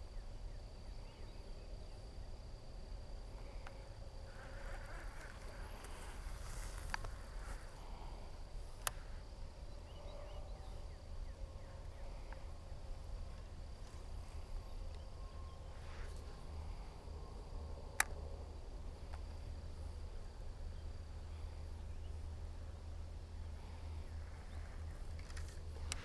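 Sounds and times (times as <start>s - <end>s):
insect drone: 0.0s - 26.0s
faint ticks: 3.3s - 7.9s, 8.6s - 9.2s, 13.3s - 15.1s, 17.9s - 18.3s, 19.0s - 19.4s, 24.3s - 26.0s.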